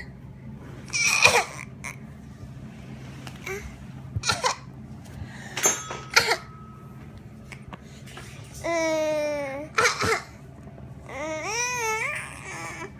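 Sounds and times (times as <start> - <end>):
toddler fake-coughing: 0.9 - 2.0, 4.2 - 4.7, 6.1 - 6.6, 8.6 - 10.4.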